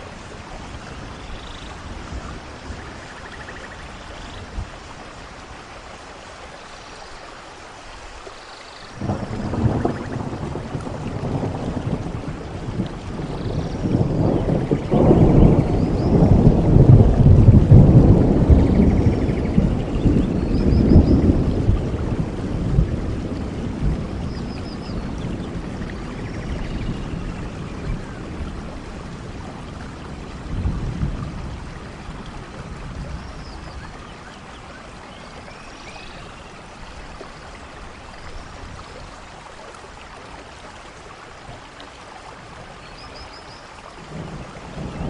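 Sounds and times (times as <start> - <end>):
steady rain: 0.0 - 45.0
rolling thunder: 9.0 - 34.0, 44.0 - 45.0.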